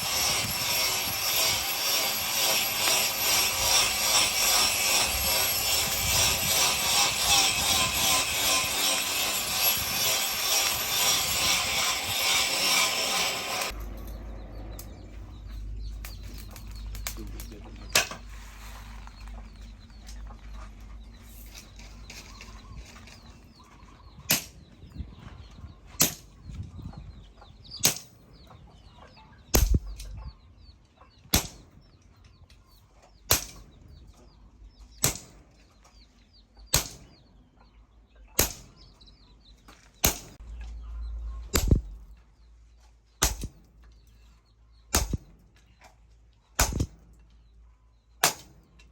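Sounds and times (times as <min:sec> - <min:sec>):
hammer striking steel: 0:26.0 - 0:26.3, 0:29.6 - 0:30.0, 0:36.7 - 0:37.1, 0:38.4 - 0:38.8, 0:40.0 - 0:40.4, 0:41.5 - 0:42.1, 0:43.2 - 0:43.6, 0:44.9 - 0:45.3, 0:46.6 - 0:47.0, 0:48.2 - 0:48.6.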